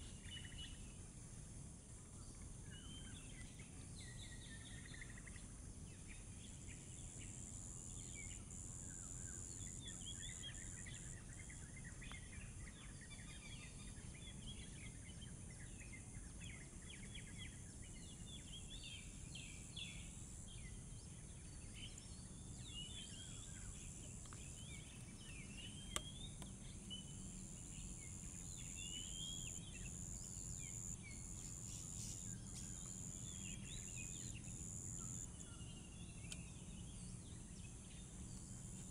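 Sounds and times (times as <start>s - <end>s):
low background noise: 0.0s - 38.9s
bird chirps and whistled song: 24.4s - 36.8s.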